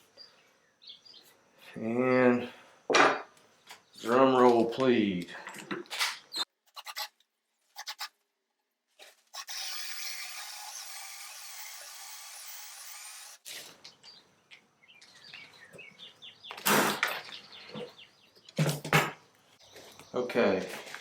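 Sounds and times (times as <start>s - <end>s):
drill boring into wood: 9.4s - 13.4s.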